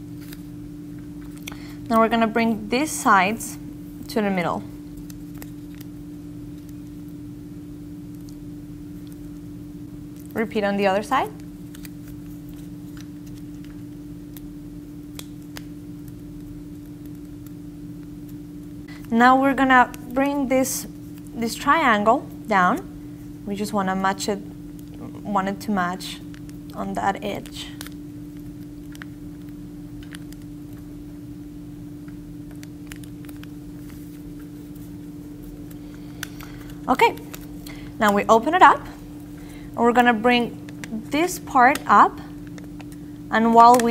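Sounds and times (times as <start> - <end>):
low electrical hum: 0.0 - 43.9
paper being folded: 4.9 - 5.9, 11.6 - 14.0, 32.4 - 37.9.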